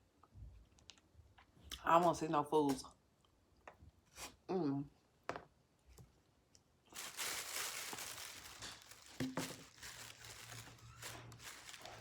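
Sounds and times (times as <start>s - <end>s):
crinkling and rustling: 6.9s - 12.0s.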